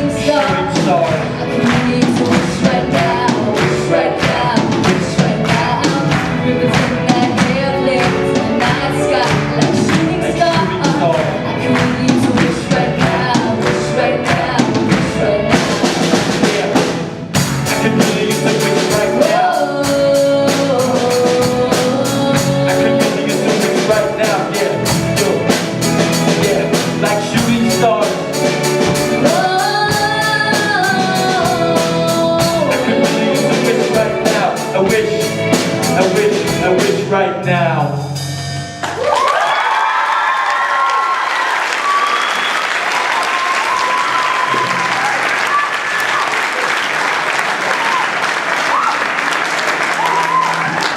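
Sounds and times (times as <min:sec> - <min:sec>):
person singing: 0:00.0 - 0:38.1
drum kit beat: 0:00.0 - 0:39.3
live pop band playing: 0:00.0 - 0:40.0, 0:47.3 - 0:50.9.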